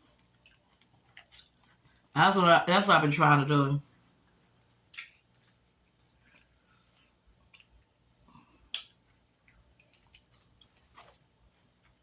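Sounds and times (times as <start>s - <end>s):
chewing: 0.0s - 2.1s, 4.3s - 12.0s
wet mouth clicks and smacks: 4.9s - 6.5s, 8.7s - 10.7s.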